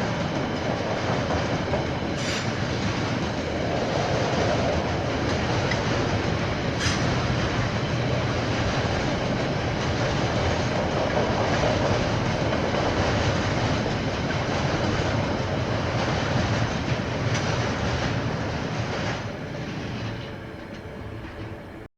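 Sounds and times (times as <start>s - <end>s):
train wheels rumbling on rail: 0.0s - 21.9s.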